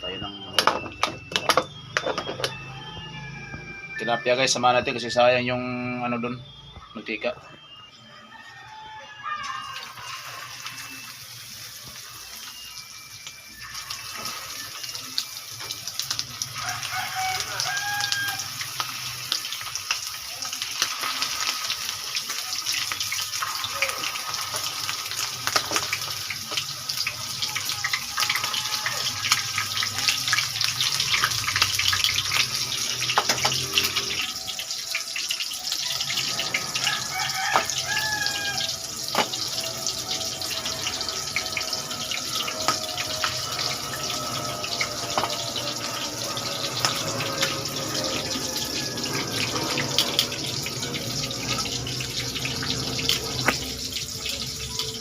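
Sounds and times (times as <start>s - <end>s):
fish frying in hot oil: 8.9s - 55.0s.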